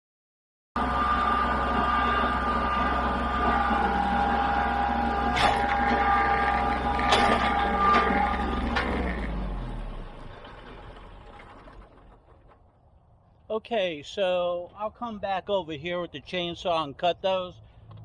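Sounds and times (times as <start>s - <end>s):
small motor running: 0.8s - 11.8s.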